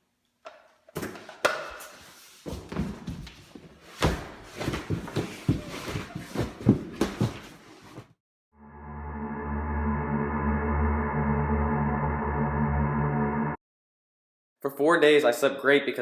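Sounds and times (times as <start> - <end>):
scraping and scuffling: 1.0 - 8.2.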